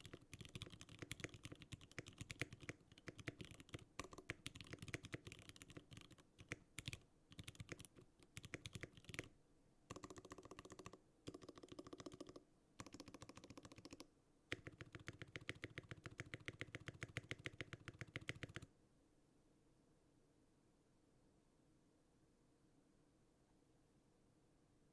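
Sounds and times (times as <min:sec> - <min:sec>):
mechanical keyboard typing: 0:00.0 - 0:09.3, 0:09.9 - 0:18.7.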